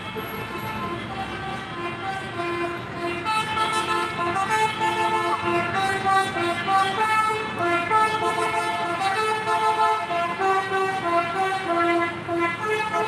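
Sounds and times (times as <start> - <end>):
musical air horn melody: 0.0 - 13.0.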